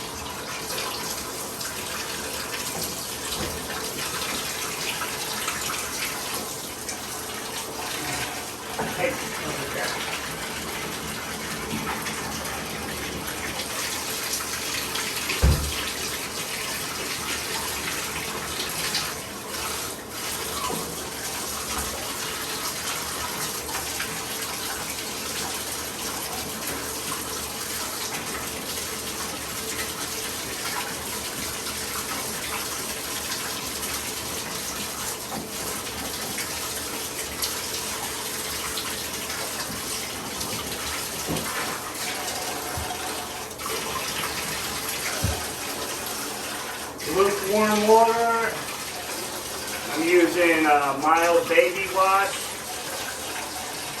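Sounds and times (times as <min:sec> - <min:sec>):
water running from bathtub tap: 0:00.0 - 0:54.0.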